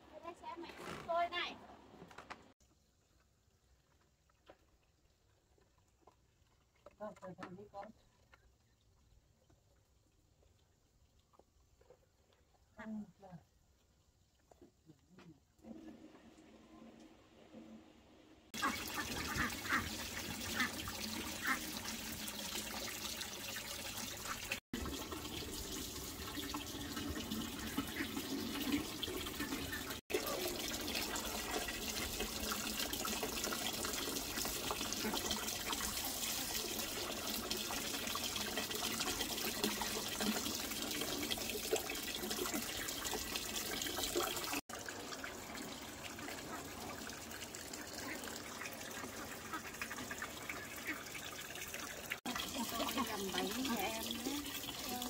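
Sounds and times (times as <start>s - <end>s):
running and splashing water: 18.5s - 55.0s.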